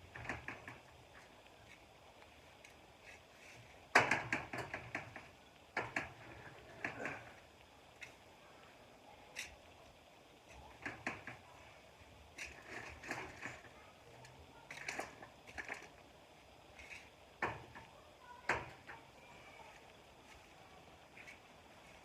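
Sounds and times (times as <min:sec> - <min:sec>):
knocks of handling potatoes: 0:03.9 - 0:06.2.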